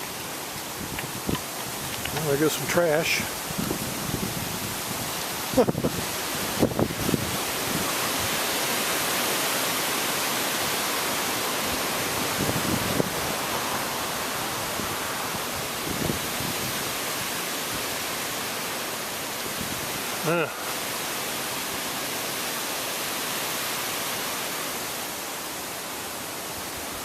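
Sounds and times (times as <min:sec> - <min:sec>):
storm wind through trees: 0:00.0 - 0:27.0
wind rumble on microphone: 0:00.6 - 0:08.6, 0:11.6 - 0:17.9.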